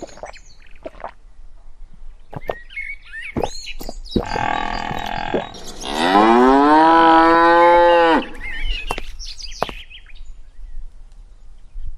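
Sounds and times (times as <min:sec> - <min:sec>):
bird chirps: 0:02.2 - 0:06.5, 0:08.2 - 0:10.8
cow mooing: 0:04.2 - 0:08.6.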